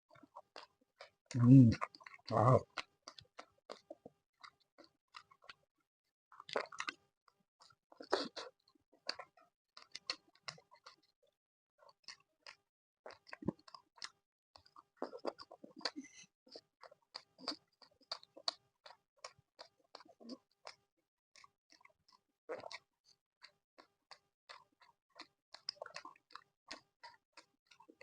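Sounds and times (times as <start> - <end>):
close-miked wet chewing: 0.1 - 28.0.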